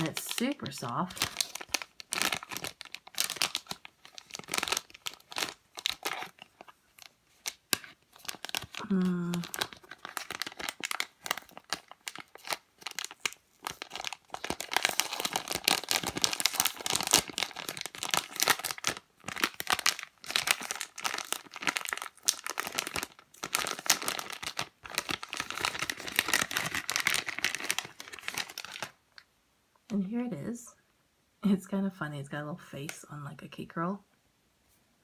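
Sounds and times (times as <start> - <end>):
plastic packaging crinkling: 0.0 - 29.2.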